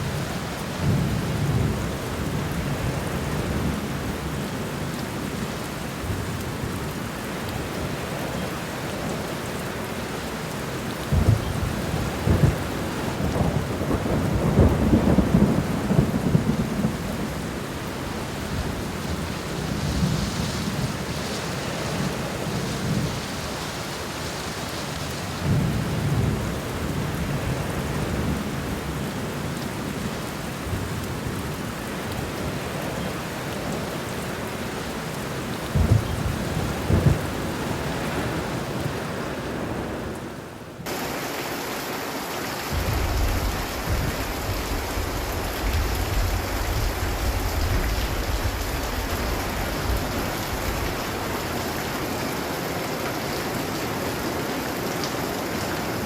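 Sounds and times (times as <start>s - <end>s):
heavy rain in wind: 0.0s - 56.0s
deep thunder rumbles: 11.1s - 17.6s, 35.6s - 40.1s, 42.7s - 52.1s.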